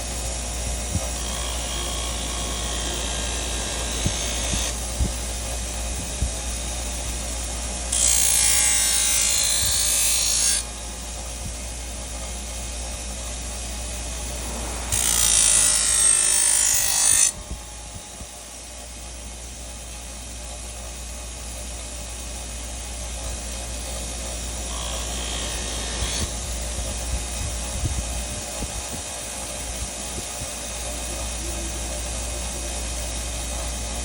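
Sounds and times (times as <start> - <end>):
tool scraping a knife: 7.9 - 10.7
low hum: 10.5 - 20.6.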